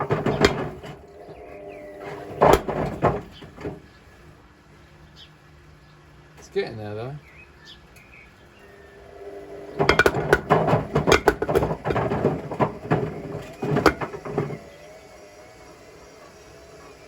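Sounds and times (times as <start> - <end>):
bricks clattering in washing machine: 0.0 - 4.0, 9.6 - 14.8
low background hum: 0.0 - 17.0.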